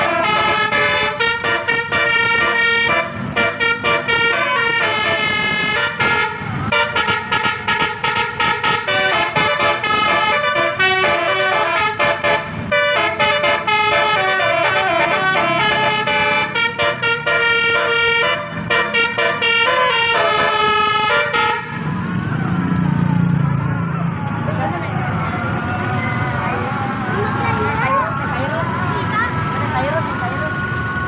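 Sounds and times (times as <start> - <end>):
multi-tone bus horn tune: 0.0 - 21.9.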